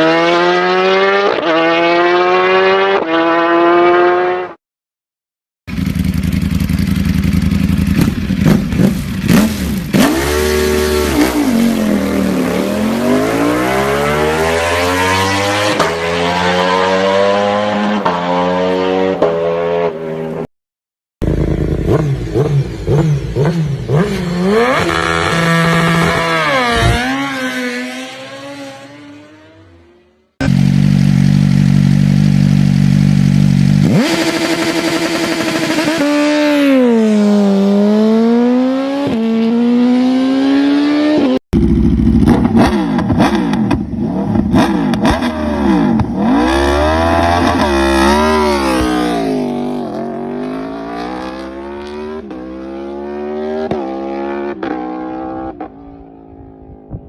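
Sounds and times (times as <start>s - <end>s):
motorcycle engine revving: 0.0s - 4.6s, 5.7s - 20.5s, 21.2s - 57.0s
motorcycle engine running steadily: 5.7s - 10.0s, 21.2s - 23.9s, 30.4s - 36.1s, 41.5s - 45.0s.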